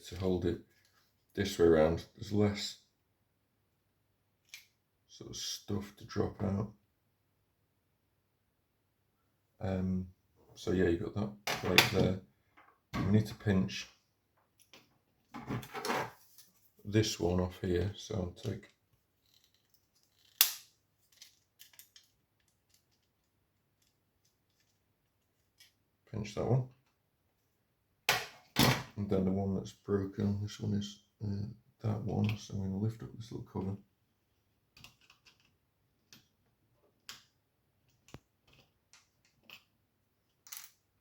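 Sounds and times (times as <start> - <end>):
small plastic parts clicking: 18.4 - 24.8, 34.8 - 36.3
plastic parts clicking: 34.8 - 36.3.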